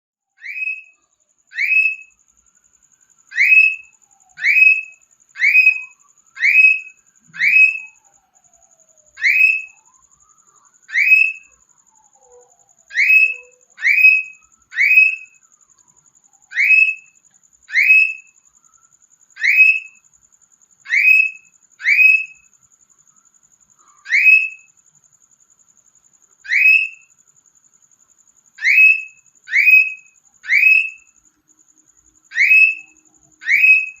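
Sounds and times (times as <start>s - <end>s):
cockatiel whistled calls: 0.4s - 0.9s, 1.5s - 2.1s, 3.3s - 8.0s, 9.2s - 9.8s, 10.9s - 11.5s, 12.9s - 15.4s, 16.5s - 17.1s, 17.7s - 18.3s, 19.4s - 20.0s, 20.9s - 22.4s, 24.0s - 24.7s, 26.5s - 27.0s, 28.6s - 31.1s, 32.3s - 34.0s.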